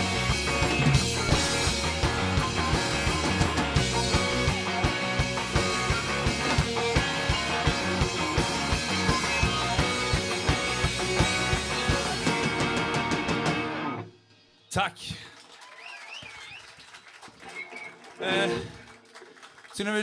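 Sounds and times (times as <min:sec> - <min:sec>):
live rock band playing: 0:00.0 - 0:14.1.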